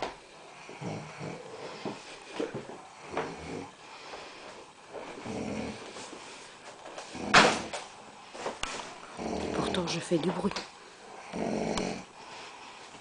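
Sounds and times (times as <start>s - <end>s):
man snoring: 0.5s - 2.0s, 2.9s - 3.8s, 5.1s - 6.0s, 7.1s - 7.7s, 9.2s - 9.8s, 11.1s - 12.2s.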